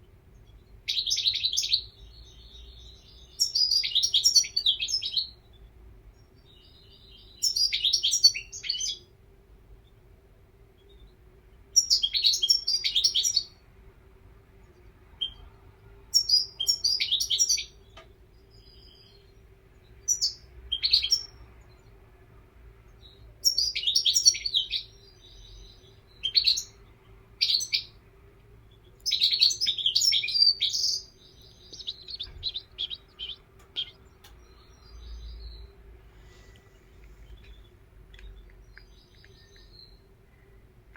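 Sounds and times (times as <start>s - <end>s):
goldfinch twittering song: 0.4s - 5.6s, 6.4s - 9.0s, 11.8s - 13.6s, 16.1s - 19.4s, 20.0s - 21.9s, 23.0s - 28.0s, 28.8s - 40.1s.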